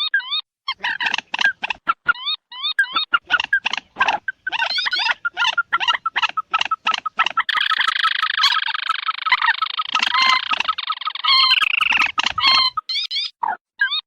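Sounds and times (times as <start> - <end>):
bird call rapid sharp notes: 2.8 - 13.4.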